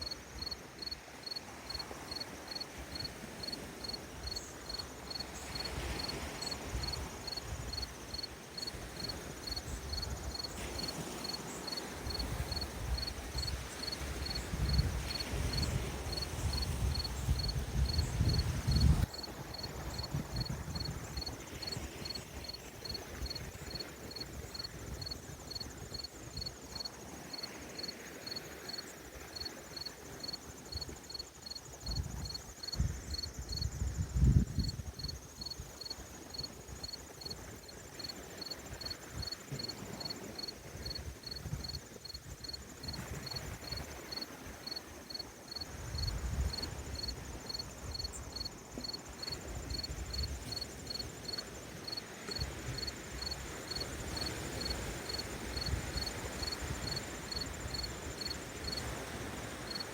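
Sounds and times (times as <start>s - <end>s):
crickets chirping: 0.0s - 59.9s
faint high insect trill: 0.0s - 59.9s.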